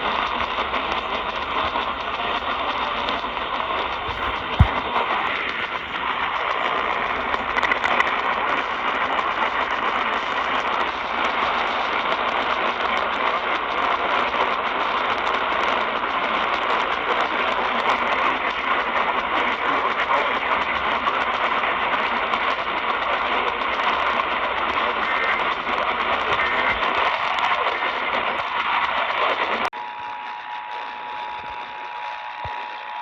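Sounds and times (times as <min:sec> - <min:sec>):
radio static hiss: 0:00.0 - 0:29.7.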